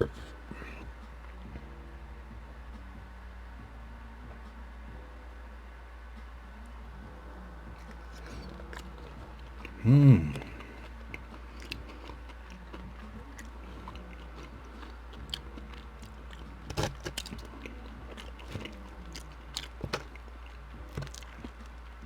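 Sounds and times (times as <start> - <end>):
chewing food close-up: 0.0 - 1.7, 7.1 - 22.0
short loud vocal sound: 9.8 - 10.6.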